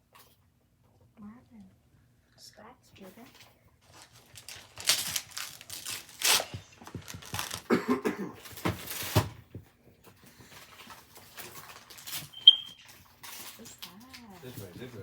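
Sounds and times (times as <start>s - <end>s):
wrapping paper tearing: 3.8s - 7.7s, 11.3s - 12.4s.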